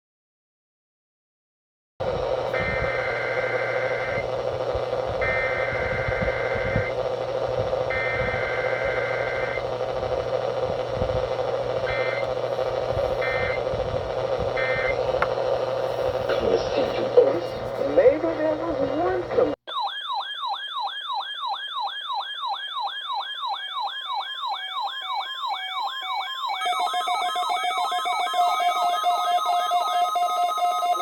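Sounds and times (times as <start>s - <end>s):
radio static and hum: 2.0s - 19.6s
raspy digital data bursts: 2.5s - 18.8s, 26.6s - 31.0s.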